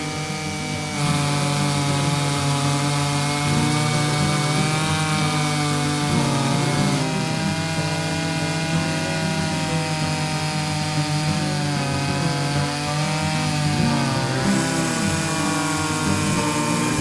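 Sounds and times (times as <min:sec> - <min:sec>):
chainsaw cutting log: 0:00.0 - 0:17.0.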